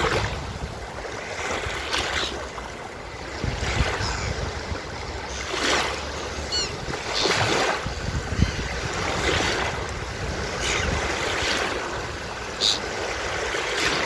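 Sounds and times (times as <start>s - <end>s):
low wind rumble: 0.0s - 1.9s, 2.5s - 13.8s
surf washing onto beach: 0.0s - 14.0s
short high bird calls: 6.4s - 7.4s, 12.6s - 12.8s.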